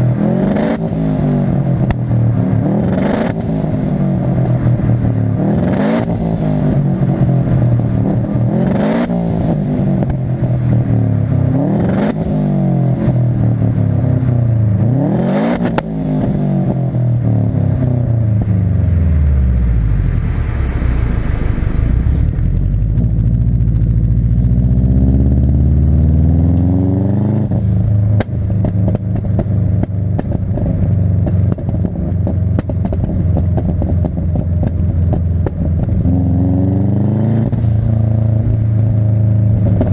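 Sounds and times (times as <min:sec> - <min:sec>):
car engine revving: 0:00.0 - 0:39.9
exhaust cracks and pops: 0:28.1 - 0:36.0, 0:39.6 - 0:39.9.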